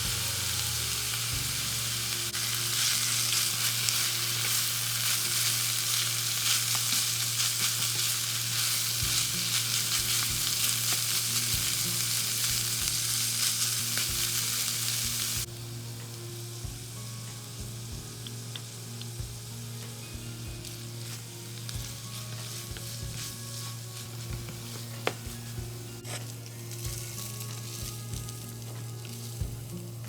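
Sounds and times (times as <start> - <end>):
food sizzling in a pan: 0.0 - 30.0
steady low hum: 15.0 - 30.0.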